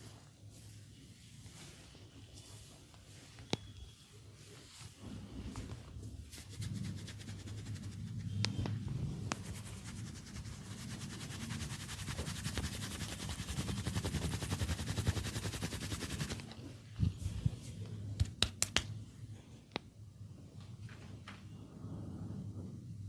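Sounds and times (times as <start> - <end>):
hands slapping body: 18.2 - 19.0.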